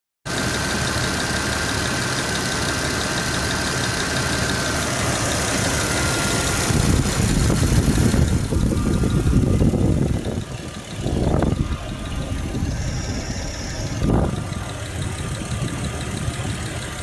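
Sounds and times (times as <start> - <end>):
car engine idling: 0.3 - 17.0
engine ticking: 0.3 - 17.0
steady whine: 4.4 - 17.0.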